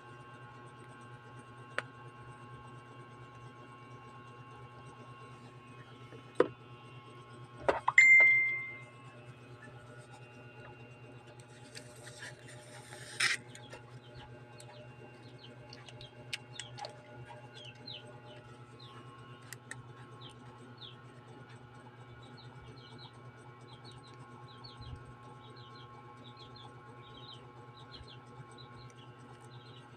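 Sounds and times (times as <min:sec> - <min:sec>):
steady low hum: 0:00.0 - 0:29.9
short ringing tone: 0:07.9 - 0:09.0
small bird chirping: 0:13.4 - 0:19.5, 0:22.2 - 0:29.9.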